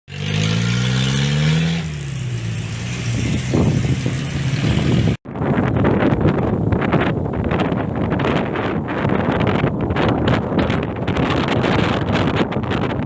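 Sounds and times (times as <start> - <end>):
engine revving: 0.1 - 5.2
wind buffeting microphone: 2.0 - 13.0.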